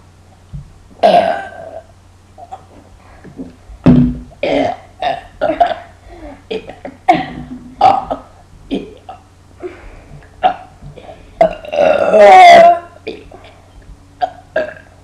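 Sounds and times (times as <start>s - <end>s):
short burps: 1.0s - 2.7s, 4.4s - 5.9s, 14.2s - 15.0s.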